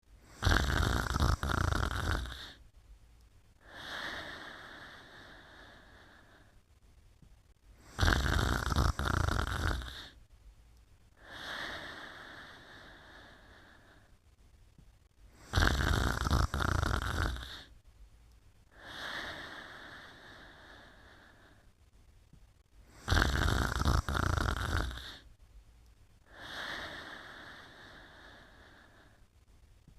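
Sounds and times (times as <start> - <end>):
person snoring: 0.2 - 2.6, 3.6 - 6.6, 7.8 - 10.2, 11.2 - 14.1, 15.3 - 17.7, 18.7 - 21.7, 22.9 - 25.3, 26.2 - 29.2
soft breath: 3.6 - 6.7, 11.1 - 14.5, 18.7 - 21.8, 26.2 - 29.6.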